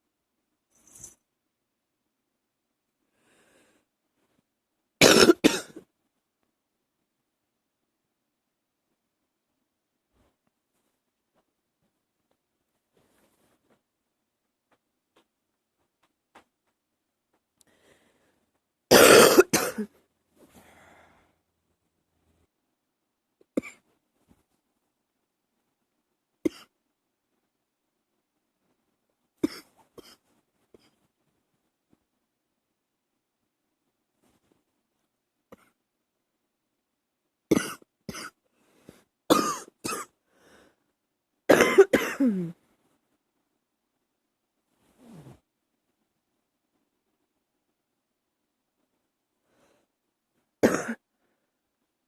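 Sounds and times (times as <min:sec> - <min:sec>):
faint breath: 0:03.1 - 0:04.0, 0:17.6 - 0:18.6, 0:20.4 - 0:21.5, 0:40.2 - 0:41.0, 0:49.4 - 0:50.0
person coughing: 0:05.0 - 0:05.9, 0:18.9 - 0:19.9, 0:29.4 - 0:30.2, 0:37.5 - 0:38.4, 0:39.3 - 0:40.1, 0:41.5 - 0:42.6, 0:50.6 - 0:51.0.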